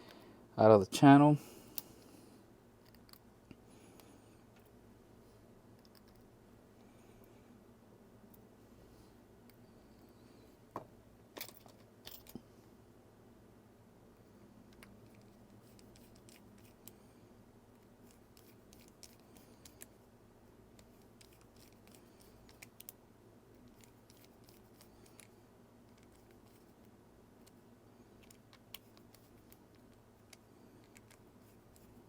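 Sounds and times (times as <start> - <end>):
small clicks and scrapes of tools: 2.8 - 4.8, 5.7 - 6.3, 11.4 - 12.4, 14.7 - 17.0, 17.7 - 20.0, 20.7 - 32.0.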